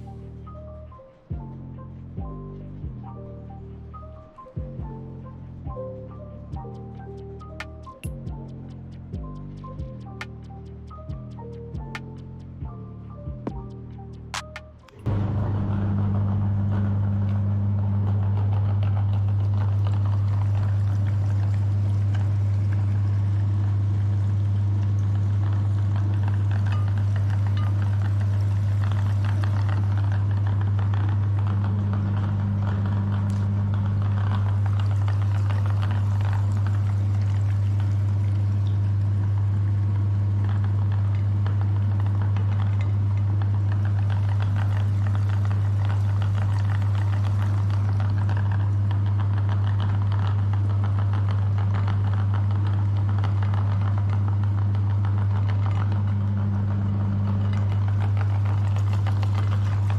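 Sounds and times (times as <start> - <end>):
electric meat grinder running: 15.1 - 59.9.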